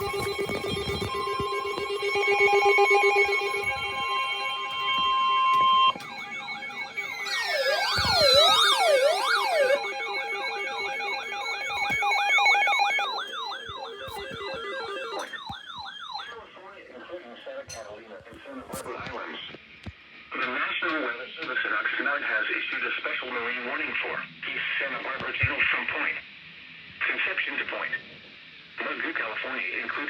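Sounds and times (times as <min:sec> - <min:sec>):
electronic emergency alert tones: 0:00.0 - 0:16.6
siren-like warbles: 0:00.0 - 0:16.6.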